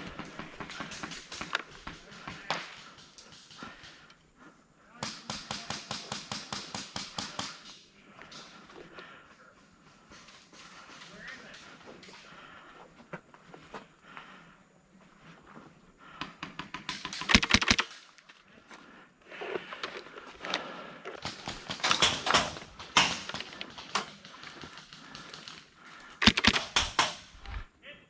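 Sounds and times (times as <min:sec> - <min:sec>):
airsoft guns firing: 0:00.0 - 0:04.0, 0:05.0 - 0:08.6, 0:16.2 - 0:18.1, 0:21.2 - 0:27.6.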